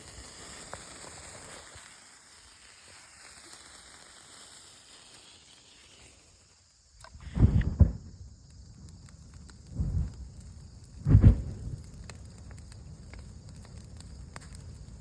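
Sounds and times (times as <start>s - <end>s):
bonfire igniting whoomp: 0.0s - 15.0s
sparkler hissing: 0.0s - 15.0s
thump: 7.2s - 8.1s, 11.1s - 11.6s.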